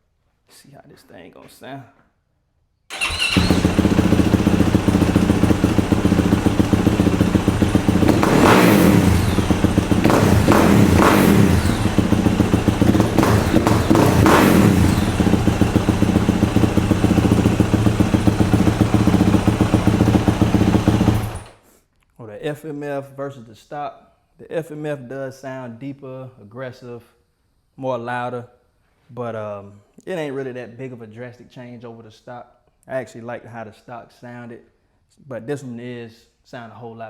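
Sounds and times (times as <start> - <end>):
dirt bike engine idling and revving: 2.9 - 21.6.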